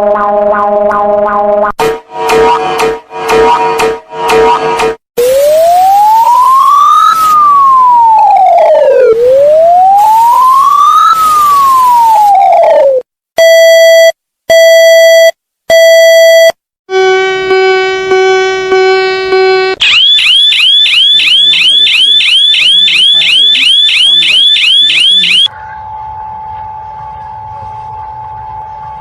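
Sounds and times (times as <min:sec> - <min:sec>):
siren wailing: 0:04.3 - 0:13.0, 0:19.8 - 0:29.0
long electronic beeps: 0:17.0 - 0:25.5.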